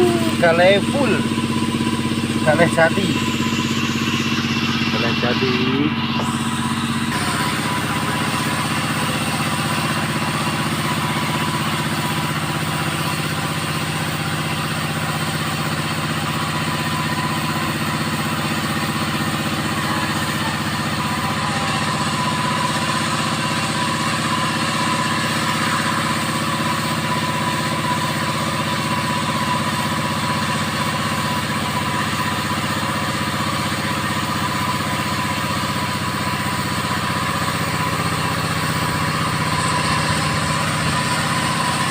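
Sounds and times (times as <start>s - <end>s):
chainsaw cutting log: 0.0s - 41.9s.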